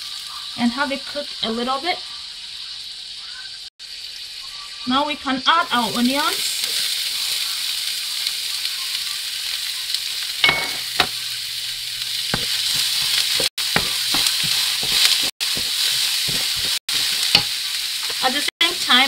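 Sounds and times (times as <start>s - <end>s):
vegetables sizzling in hot oil: 0.0s - 19.0s
spoon scraping a pan: 12.1s - 18.4s.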